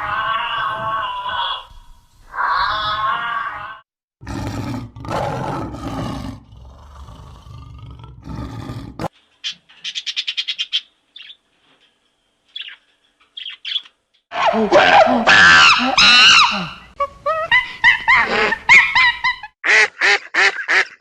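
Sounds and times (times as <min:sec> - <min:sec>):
animal rough calls: 0:02.3 - 0:09.1
small bird chirps: 0:09.4 - 0:11.4, 0:12.5 - 0:14.0.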